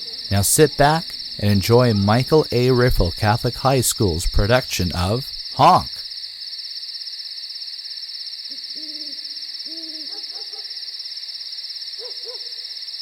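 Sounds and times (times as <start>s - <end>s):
crickets trilling: 0.0s - 13.0s
owl hooting: 8.5s - 10.8s.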